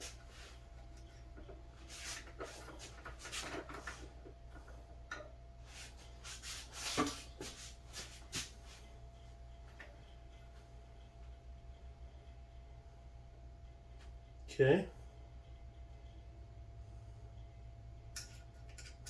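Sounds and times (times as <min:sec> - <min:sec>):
screw turning with clicks and scraping: 0:18.2 - 0:19.0.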